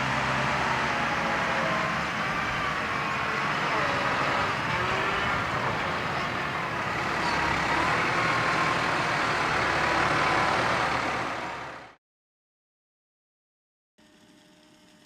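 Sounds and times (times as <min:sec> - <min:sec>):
harvesting machinery drone: 0:00.0 - 0:11.9.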